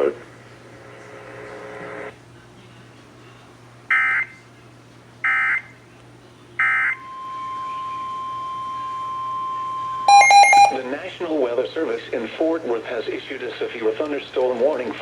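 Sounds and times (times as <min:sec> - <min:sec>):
steady single-pitch alert tone: 0:06.8 - 0:10.8.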